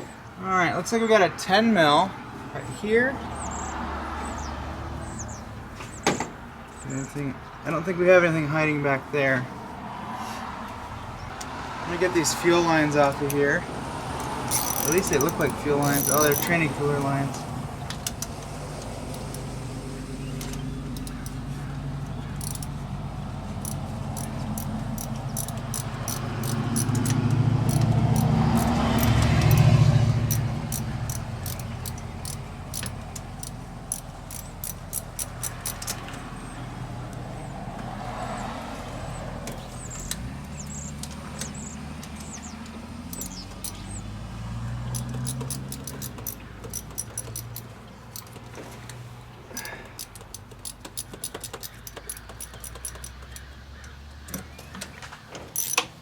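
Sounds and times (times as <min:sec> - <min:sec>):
vehicle passing by: 0:01.2 - 0:50.1
metal hand tools clinking: 0:14.2 - 0:17.2, 0:22.4 - 0:22.7, 0:23.6 - 0:36.1, 0:43.1 - 0:43.9, 0:45.0 - 0:48.4, 0:49.5 - 0:53.4, 0:55.6 - 0:55.9.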